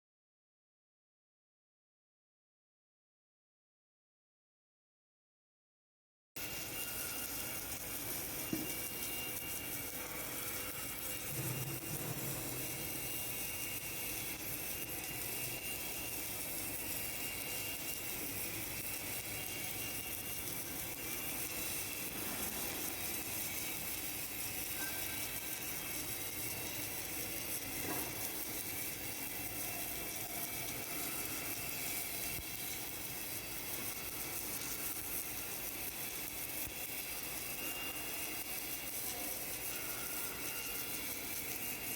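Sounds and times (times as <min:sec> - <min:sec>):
arc welding machine hissing: 0:06.4 - 0:41.9
faint high whine: 0:06.6 - 0:13.2.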